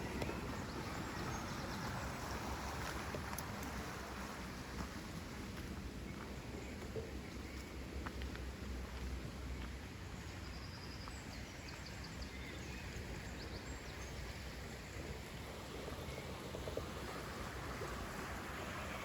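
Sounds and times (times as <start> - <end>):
flowing water rush: 0.0 - 6.0, 12.8 - 19.0.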